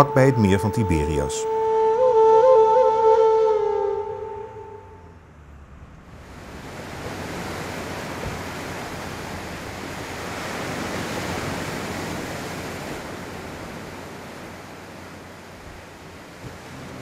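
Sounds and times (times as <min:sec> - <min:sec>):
water rushing: 0:03.7 - 0:17.0.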